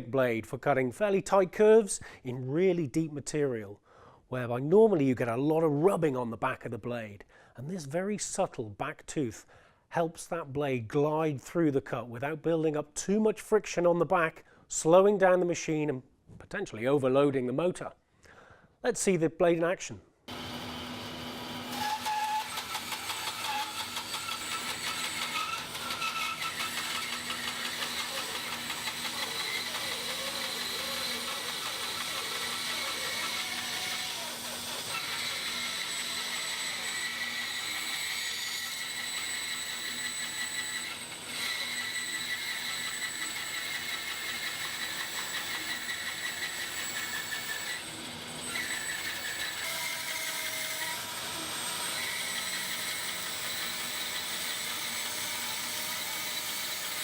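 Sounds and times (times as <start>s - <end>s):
bandsaw blade hissing through wood: 21.8s - 38.0s.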